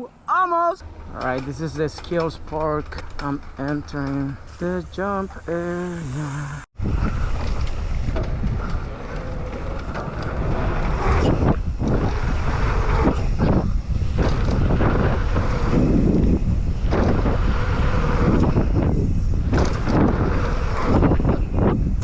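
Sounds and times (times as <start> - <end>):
bike rattling and knocking: 0.8 - 4.5
wind buffeting microphone: 0.8 - 22.0
mountain bike rolling on dirt: 0.9 - 22.0.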